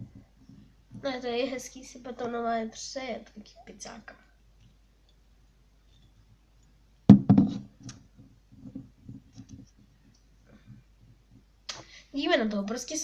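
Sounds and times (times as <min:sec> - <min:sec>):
loud knock: 0:07.1 - 0:07.7.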